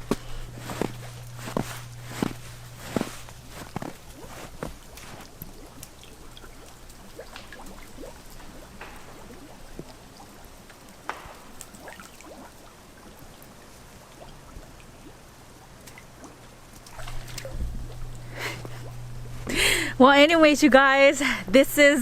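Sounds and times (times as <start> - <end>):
faint low hum: 0.0 - 22.0
light ticks and clicks: 4.9 - 10.0.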